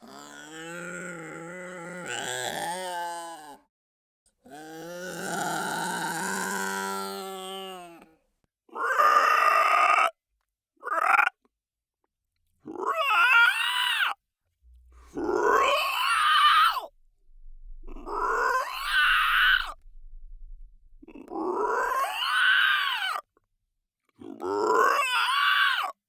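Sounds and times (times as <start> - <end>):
monster calls rising and falling: 14.7 - 22.6.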